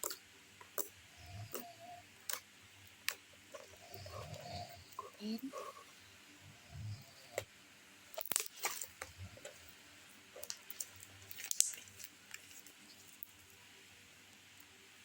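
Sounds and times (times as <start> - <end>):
slime squished by hand: 10.4 - 13.4.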